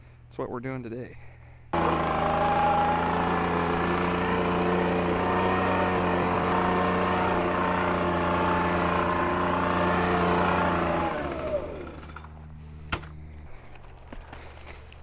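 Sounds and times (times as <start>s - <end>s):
leaf blower running: 1.8s - 13.6s.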